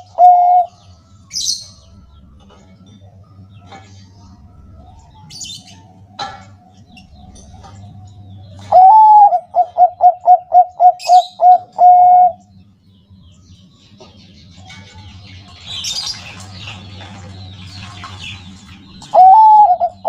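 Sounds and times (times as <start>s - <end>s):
dove cooing: 0.0s - 12.5s, 14.0s - 20.0s.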